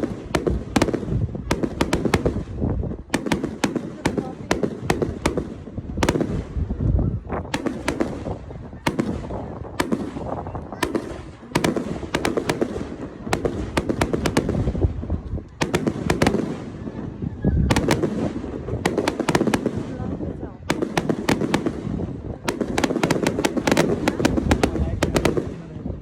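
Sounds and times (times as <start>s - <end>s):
fireworks bangs and crackles: 0.0s - 26.0s
low booming: 0.0s - 26.0s.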